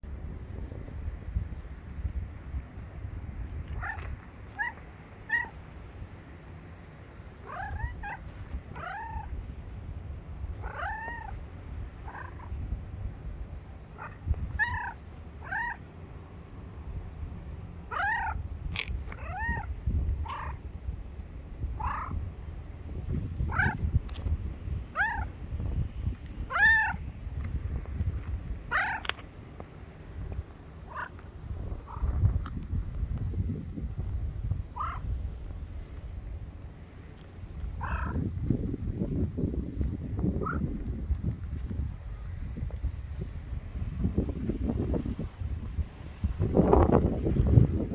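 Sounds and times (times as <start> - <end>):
cat meowing: 3.8 - 5.6, 7.4 - 9.4, 10.6 - 11.4, 14.0 - 15.8, 17.9 - 18.4, 19.2 - 19.7, 26.5 - 27.0, 28.7 - 29.1, 37.8 - 38.2.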